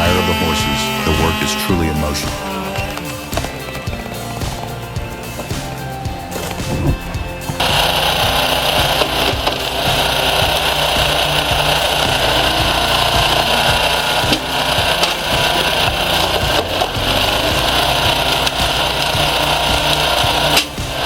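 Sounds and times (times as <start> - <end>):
motorised machine running: 4.4 - 21.0.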